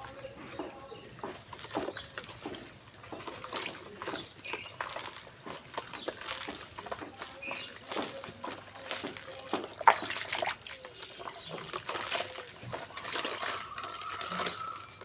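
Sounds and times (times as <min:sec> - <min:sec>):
dry clumps crunching in fingers: 0:00.0 - 0:15.0
bird chirps: 0:10.0 - 0:15.0.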